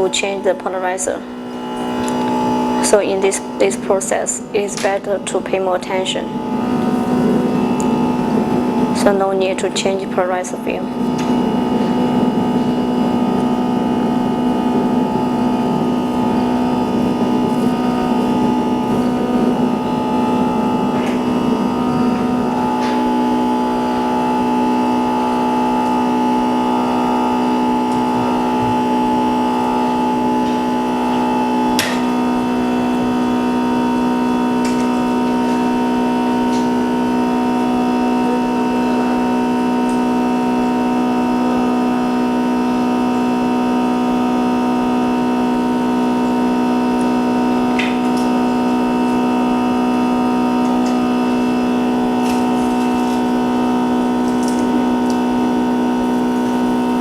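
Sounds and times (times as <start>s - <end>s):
machine humming: 0.0s - 57.0s.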